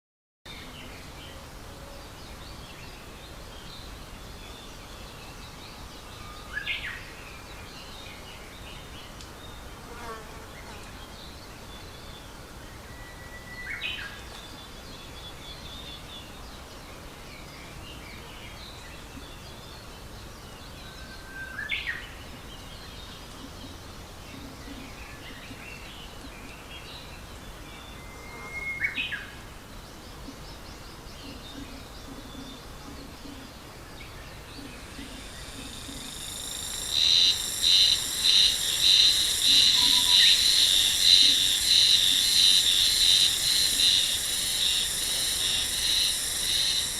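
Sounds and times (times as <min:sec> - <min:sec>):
shrill pulsing insect chorus: 0:34.7 - 0:46.9
songbird whistling: 0:35.9 - 0:42.1.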